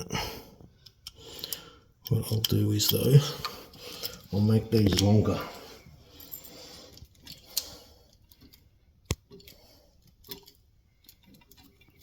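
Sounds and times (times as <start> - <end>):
small tools clicking and ticking: 0.8 - 5.3.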